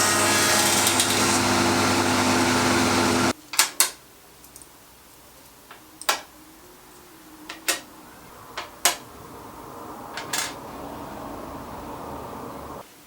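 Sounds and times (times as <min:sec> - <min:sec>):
steady whooshing noise: 0:06.5 - 0:12.9
wood and tools knocking: 0:07.5 - 0:07.9, 0:08.5 - 0:09.1, 0:10.1 - 0:10.7.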